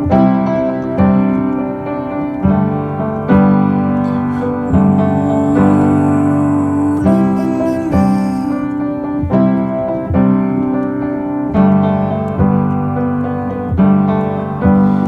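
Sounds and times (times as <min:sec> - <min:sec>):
piano chords ringing: 0:00.0 - 0:14.7.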